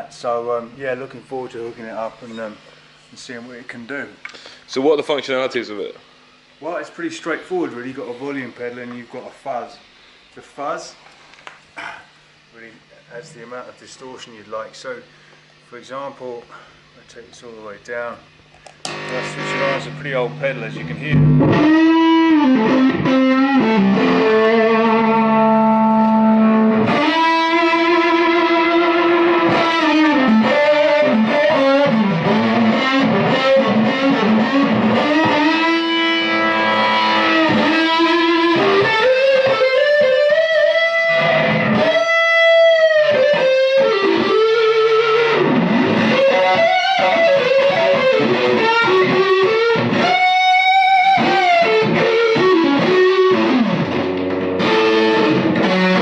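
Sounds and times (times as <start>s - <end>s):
fuzz electric guitar lead: 18.8s - 56.0s.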